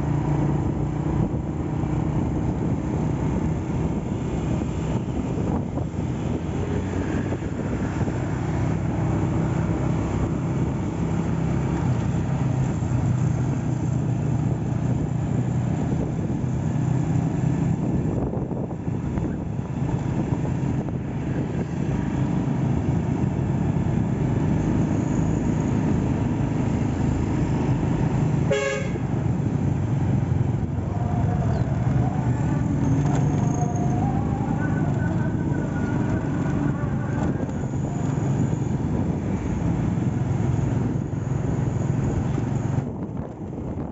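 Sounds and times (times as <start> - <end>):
road and wind noise: 0.0 - 43.9
short horn toot: 28.5 - 29.0.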